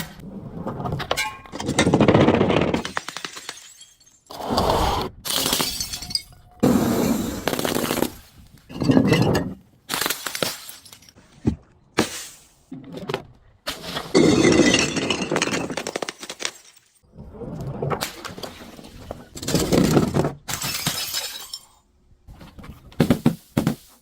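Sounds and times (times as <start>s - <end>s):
glass breaking and crunching: 2.7s - 4.3s, 5.3s - 6.6s, 14.2s - 17.0s, 20.5s - 21.8s.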